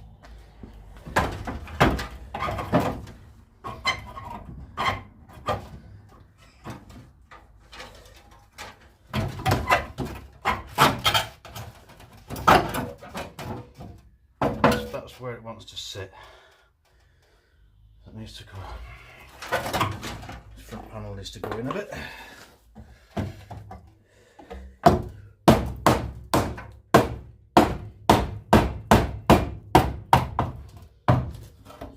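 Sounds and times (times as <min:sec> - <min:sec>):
car body parts knocking: 0:01.0 - 0:05.9, 0:22.9 - 0:31.9.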